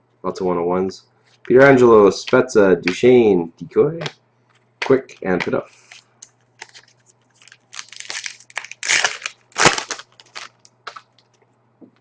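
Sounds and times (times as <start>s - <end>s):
cards being handled: 4.0s - 11.2s
wrapper crinkling torn open: 6.6s - 11.4s.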